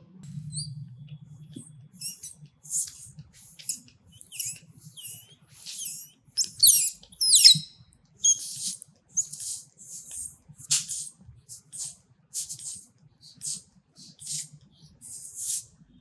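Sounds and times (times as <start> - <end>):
high-pitched squeaks and chirps: 0.4 - 0.8, 1.5 - 11.9.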